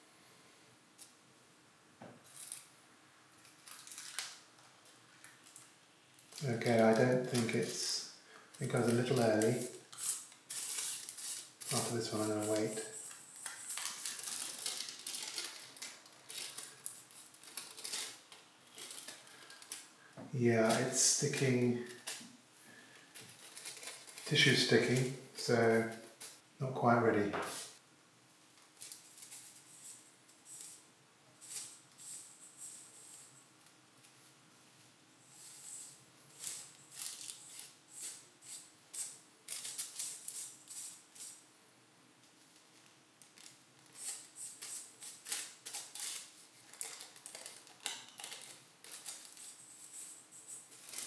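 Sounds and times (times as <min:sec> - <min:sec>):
tissue paper rustling: 0:08.6 - 0:19.9, 0:23.3 - 0:25.0, 0:35.4 - 0:38.6, 0:43.4 - 0:51.0.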